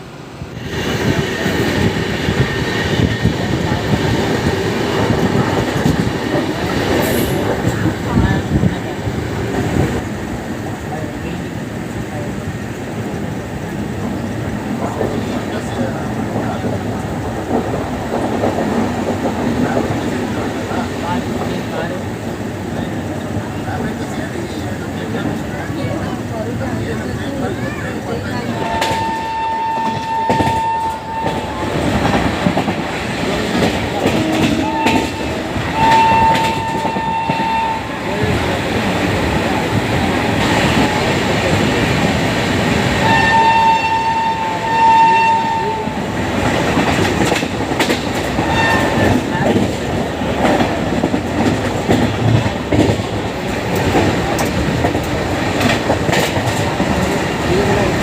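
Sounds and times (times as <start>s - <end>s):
train rumble and clatter: 0.0s - 58.0s
shrill locomotive horn: 28.6s - 31.7s, 34.1s - 38.0s, 43.0s - 46.0s, 48.5s - 49.2s.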